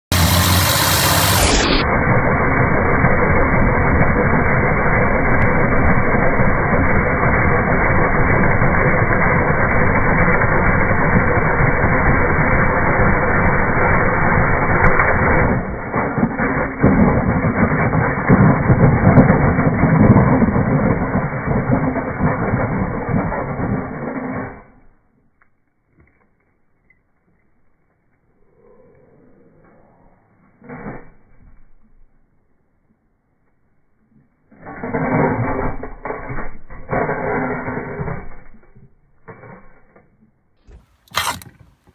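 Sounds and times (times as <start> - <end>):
power drill boring through wall: 0.0 - 25.0, 34.5 - 40.0, 40.7 - 41.6.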